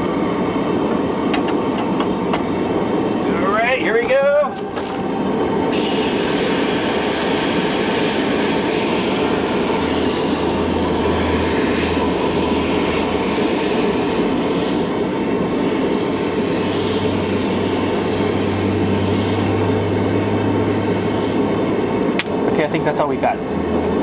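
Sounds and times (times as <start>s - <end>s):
low hum: 0.0s - 14.4s
forge rushing noise: 0.0s - 23.9s.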